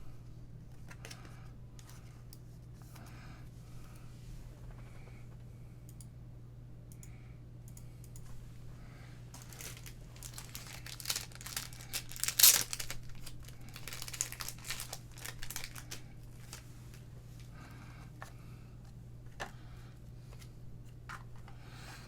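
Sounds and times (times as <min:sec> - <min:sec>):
plastic wrapper tearing and crinkling: 0:09.4 - 0:16.7.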